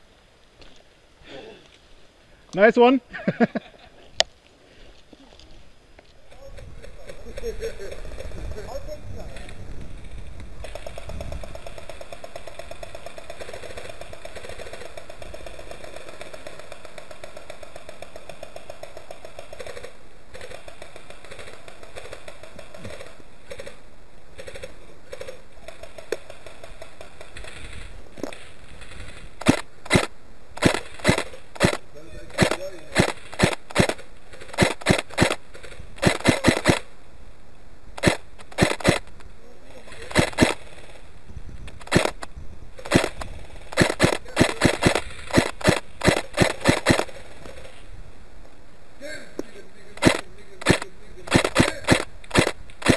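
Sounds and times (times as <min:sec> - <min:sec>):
automatic airsoft gunfire: 0:09.4 - 0:37.0, 0:38.0 - 0:39.2, 0:39.9 - 0:41.0, 0:41.8 - 0:47.8, 0:50.0 - 0:52.9
sharp single gunshots: 0:29.4 - 0:35.4, 0:36.0 - 0:36.9, 0:38.0 - 0:39.1, 0:40.0 - 0:40.8, 0:41.8 - 0:47.2, 0:50.0 - 0:52.9.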